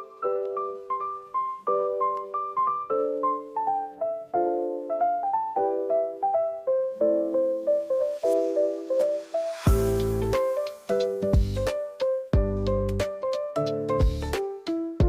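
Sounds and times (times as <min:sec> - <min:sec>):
gentle piano melody: 0:00.0 - 0:15.0.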